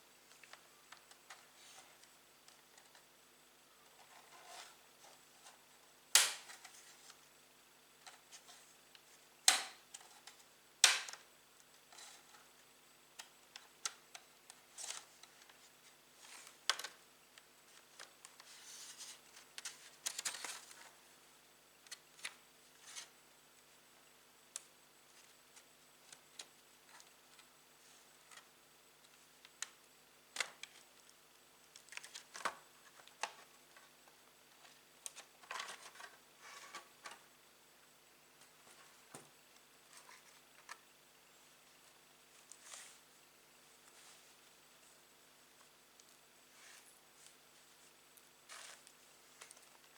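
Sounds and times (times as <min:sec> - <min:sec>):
rustling: 0:41.4 - 0:49.9.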